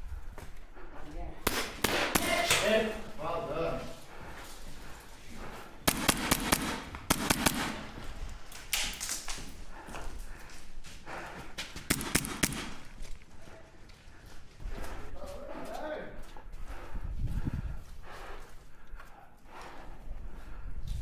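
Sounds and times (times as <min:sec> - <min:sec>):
airsoft guns firing: 0:01.4 - 0:03.1, 0:05.8 - 0:09.2, 0:11.8 - 0:13.1.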